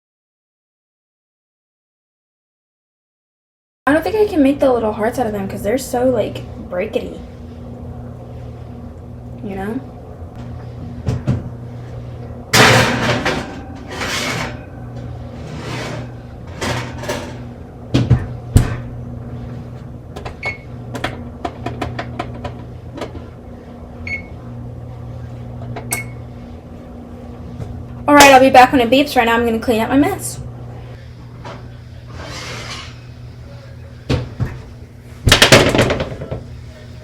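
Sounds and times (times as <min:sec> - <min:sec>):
steady low hum: 0:03.9 - 0:37.0
kitchen clatter and knocks: 0:12.5 - 0:14.7, 0:15.5 - 0:18.9, 0:35.2 - 0:36.5.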